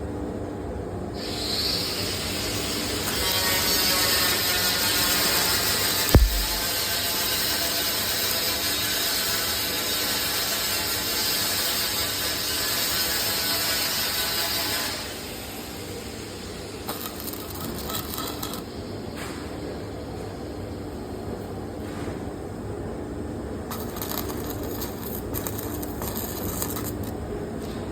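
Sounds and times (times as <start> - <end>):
welding arc crackling: 6.1 - 6.8, 23.7 - 27.1.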